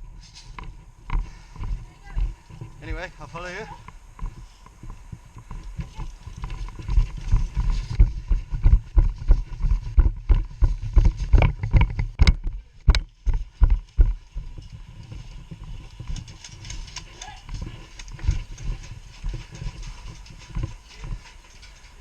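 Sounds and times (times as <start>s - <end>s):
kit jostling: 14.2s - 22.0s.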